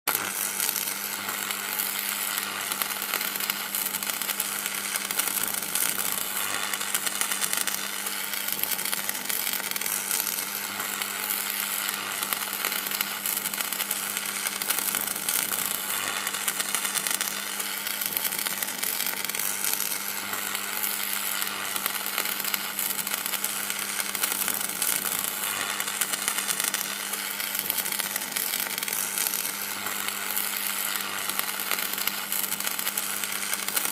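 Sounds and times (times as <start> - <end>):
electric buzz: 0.1 - 33.9.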